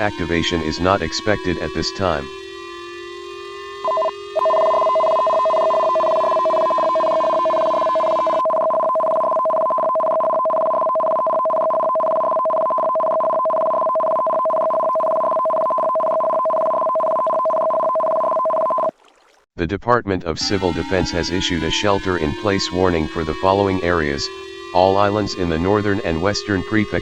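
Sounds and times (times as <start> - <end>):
low tone sinking in pitch: 0.0 - 4.1, 20.4 - 27.0
two-tone alert signal: 0.0 - 10.6.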